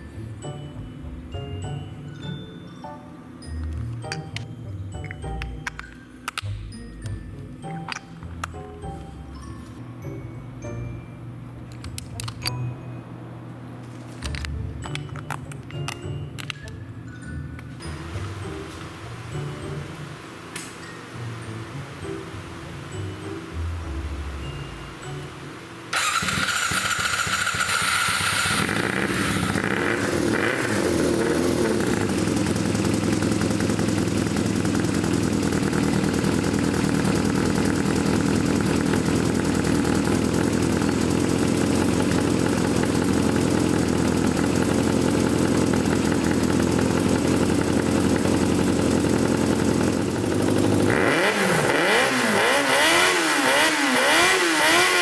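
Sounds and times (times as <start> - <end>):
motorcycle engine idling and revving: 17.7 - 20.4, 22.0 - 55.0.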